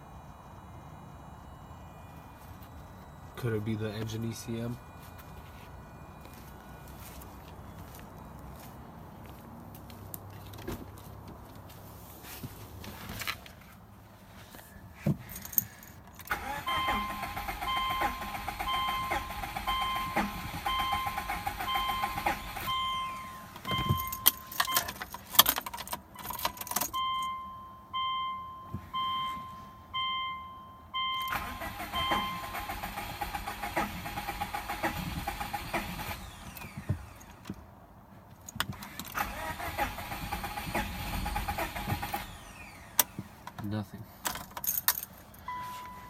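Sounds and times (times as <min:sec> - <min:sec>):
car warning chime beeping: 0:00.0 - 0:09.4, 0:15.8 - 0:25.2, 0:26.0 - 0:37.3, 0:39.2 - 0:43.2, 0:45.4 - 0:46.0
keys jangling: 0:15.2 - 0:16.3, 0:23.9 - 0:27.0, 0:44.2 - 0:45.5.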